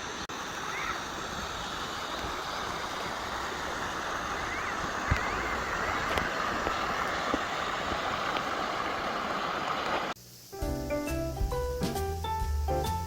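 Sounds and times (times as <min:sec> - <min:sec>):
stream water rushing: 0:00.0 - 0:10.2.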